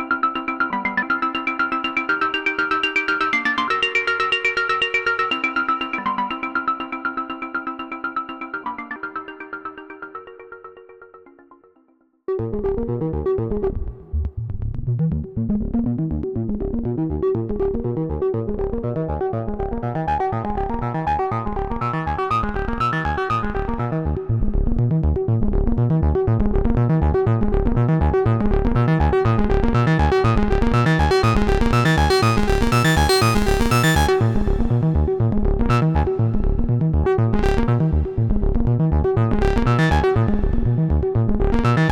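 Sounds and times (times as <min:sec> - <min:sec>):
synthesizer sequenced bass pattern: 0:12.3 - 0:41.9.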